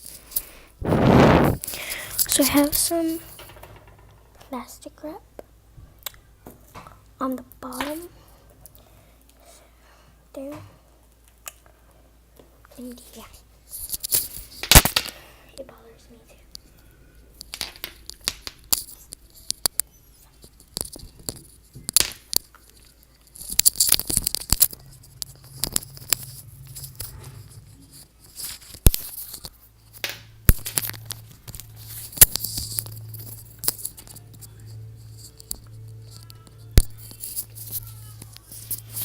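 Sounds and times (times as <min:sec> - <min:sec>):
low steady hum: 0:00.0 - 0:39.0
plastic wrap crinkling and tearing: 0:17.4 - 0:39.0.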